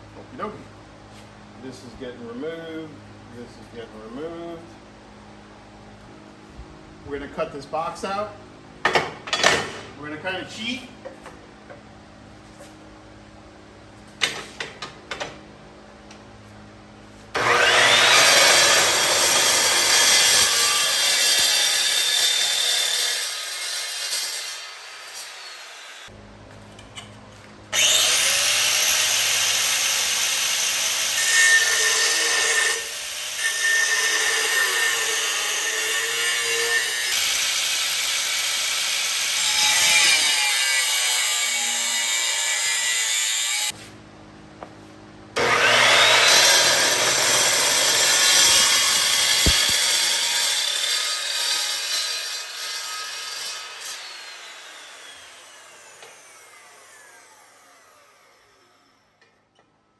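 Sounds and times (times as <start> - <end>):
power saw cutting sheet metal: 17.4 - 26.1, 27.8 - 43.8, 45.4 - 59.1.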